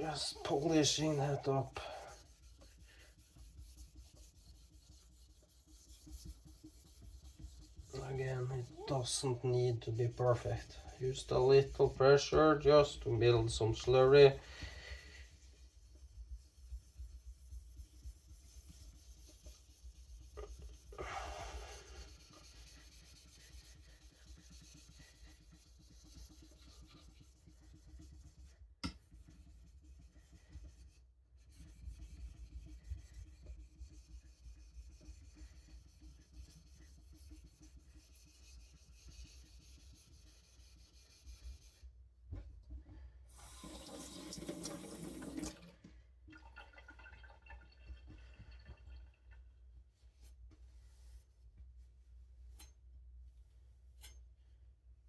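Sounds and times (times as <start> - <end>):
knife scraping on whetstone: 54.0 - 54.2.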